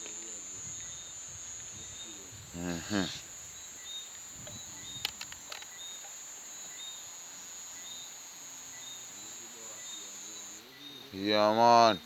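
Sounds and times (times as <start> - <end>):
high-pitched insect trill: 0.0 - 12.0
short insect chirp: 0.0 - 12.0
sharp clicks: 4.1 - 5.9.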